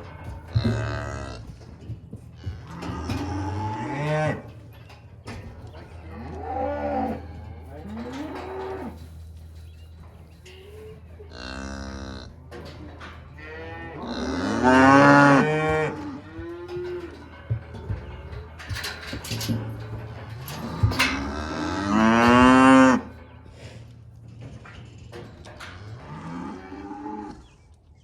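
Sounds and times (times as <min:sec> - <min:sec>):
cattle mooing: 0:00.0 - 0:01.7, 0:02.3 - 0:04.6, 0:05.9 - 0:09.2, 0:10.6 - 0:23.2, 0:25.6 - 0:27.5.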